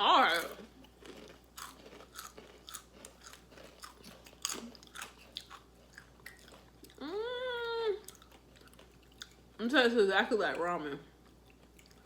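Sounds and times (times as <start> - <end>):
crunching potato crisps: 0.2 - 7.0.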